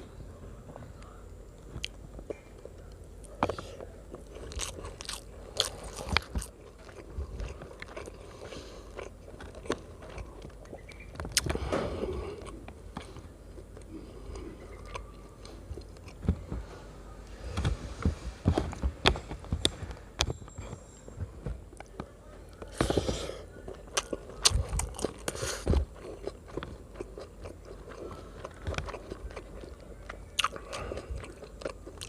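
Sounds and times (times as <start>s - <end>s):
person chewing and biting: 3.2s - 16.6s, 22.6s - 32.0s.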